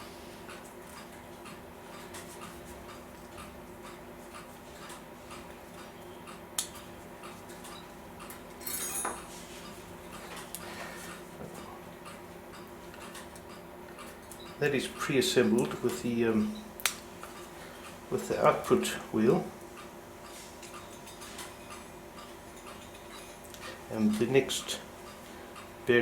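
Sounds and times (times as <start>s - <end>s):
clock ticking: 0.5s - 6.4s.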